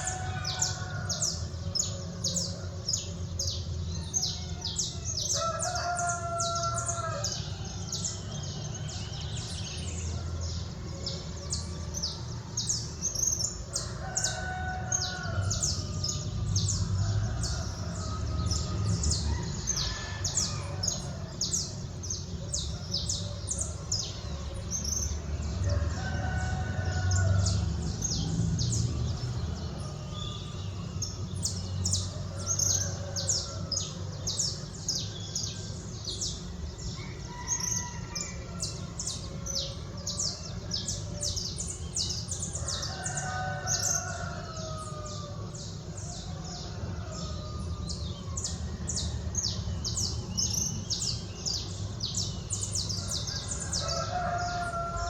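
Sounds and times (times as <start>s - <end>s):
low rumble of city noise: 0.0s - 55.0s
rooster crowing: 0.0s - 55.0s.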